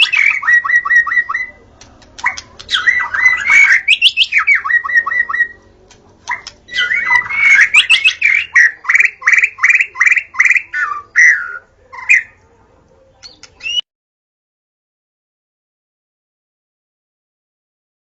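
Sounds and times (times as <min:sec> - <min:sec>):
bird singing whistled phrases: 0:00.0 - 0:01.5, 0:02.3 - 0:05.6, 0:06.3 - 0:12.3, 0:13.2 - 0:13.8.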